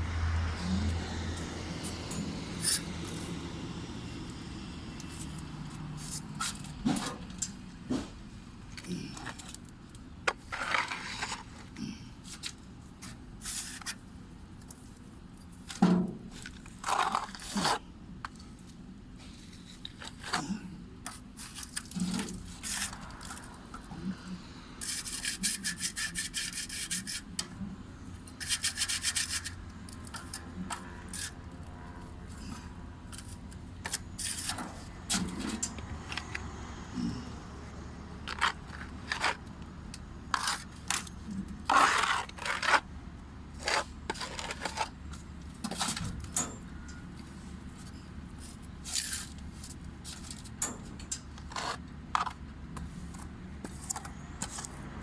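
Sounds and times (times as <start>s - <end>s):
hand tools scraping on stucco: 10.3s - 11.7s, 16.8s - 17.8s, 24.8s - 27.4s, 28.4s - 36.4s, 38.2s - 39.6s, 40.3s - 42.9s, 43.6s - 46.1s, 51.4s - 52.4s.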